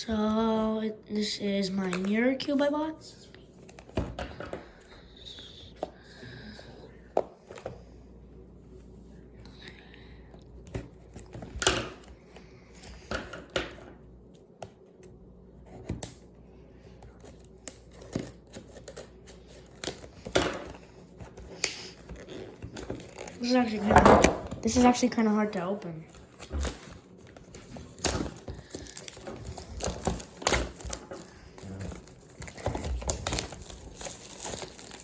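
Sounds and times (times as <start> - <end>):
packaging rustling scrapes: 17.1 - 23.9, 26.1 - 35.0.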